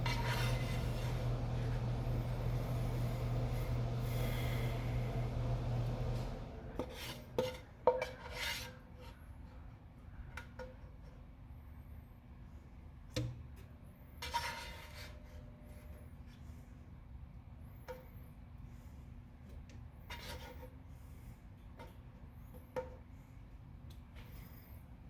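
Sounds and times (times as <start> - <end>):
scraping rubs: 0.0 - 5.0
low hum: 0.0 - 6.8.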